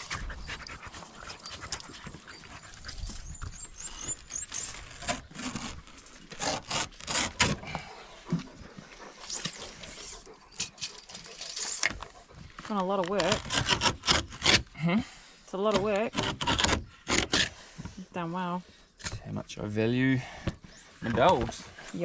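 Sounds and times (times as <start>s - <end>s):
dogs panting: 0.0s - 15.4s.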